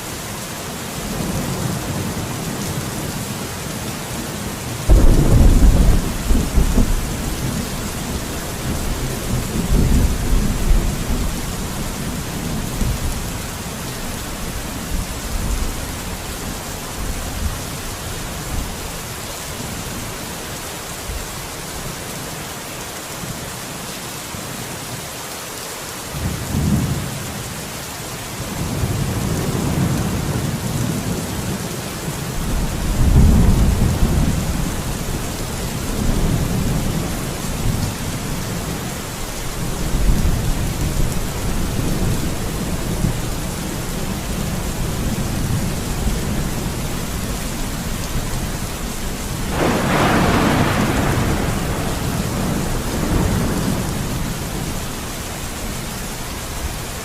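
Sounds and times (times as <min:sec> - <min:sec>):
steady rain: 0:00.0 - 0:57.0
thunder rumbling: 0:04.9 - 0:18.7, 0:32.3 - 0:55.9.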